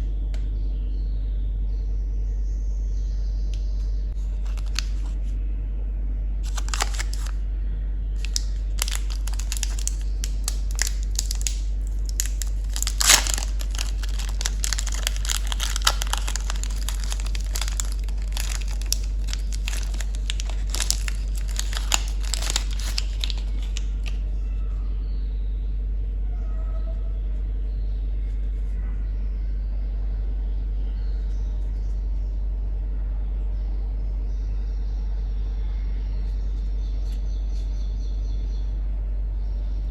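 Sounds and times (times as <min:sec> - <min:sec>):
steady low hum: 0:00.0 - 0:39.9
candy wrappers crinkling: 0:04.2 - 0:05.3, 0:06.4 - 0:07.4, 0:08.2 - 0:24.2.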